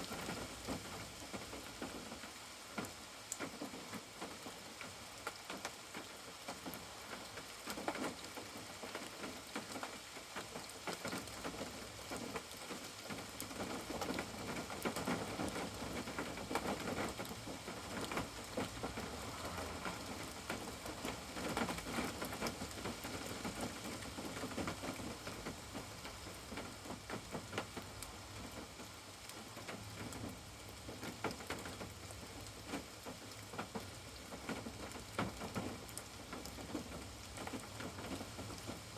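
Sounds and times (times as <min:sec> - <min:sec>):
rain falling: 0:00.0 - 0:38.9
raindrops ticking on a surface: 0:00.0 - 0:38.9.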